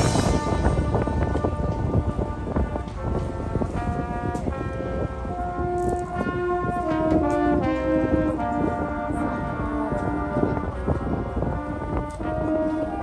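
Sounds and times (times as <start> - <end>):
drumline and percussion: 0.0 - 3.0
brass chords: 0.0 - 13.0.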